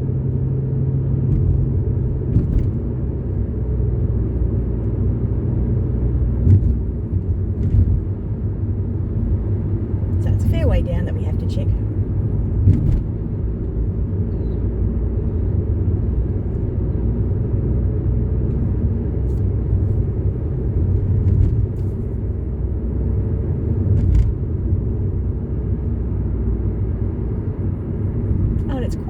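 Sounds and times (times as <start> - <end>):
car engine and tyre rumble: 0.0 - 29.0.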